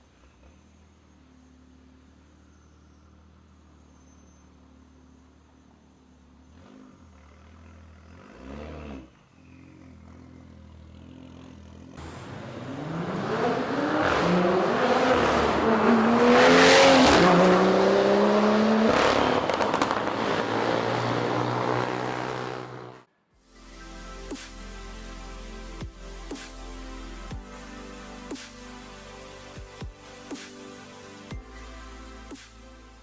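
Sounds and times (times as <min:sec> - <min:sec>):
car engine revving and accelerating: 0:06.5 - 0:23.1.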